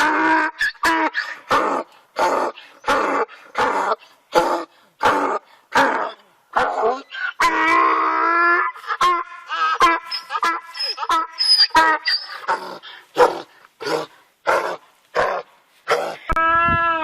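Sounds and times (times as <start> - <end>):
dog barking: 13.2 - 13.5.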